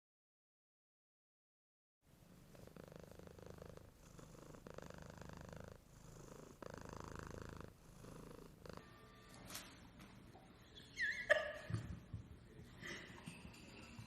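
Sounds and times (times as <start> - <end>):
cat purring softly: 2.3 - 8.9.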